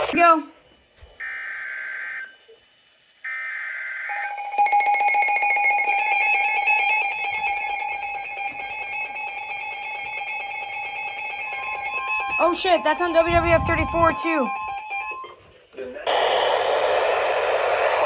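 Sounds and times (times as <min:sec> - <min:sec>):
data noise bursts: 0:00.0 - 0:00.3.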